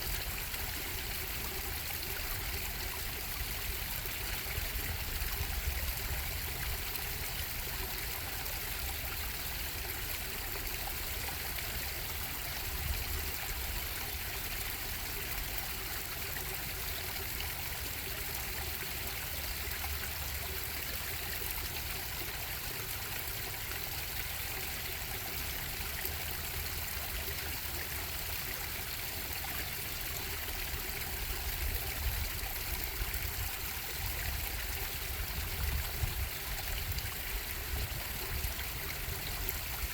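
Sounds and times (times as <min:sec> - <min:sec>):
bubbling stream: 0:00.0 - 0:39.9.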